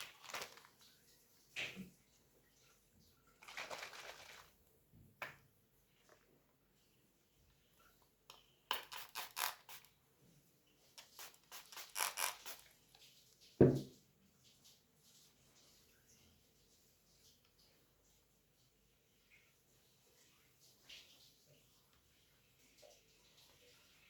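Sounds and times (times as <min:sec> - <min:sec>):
rustle of small objects: 0:00.0 - 0:02.7, 0:03.3 - 0:04.6.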